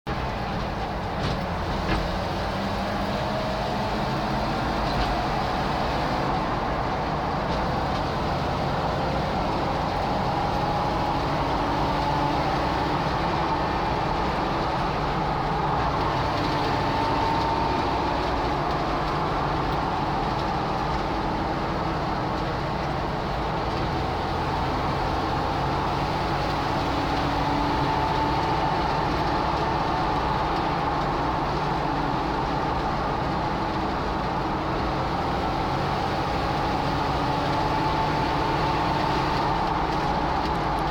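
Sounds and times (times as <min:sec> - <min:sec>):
low engine hum: 0:00.1 - 0:40.9
rushing noise: 0:00.1 - 0:40.9
vehicle whine: 0:00.1 - 0:40.9.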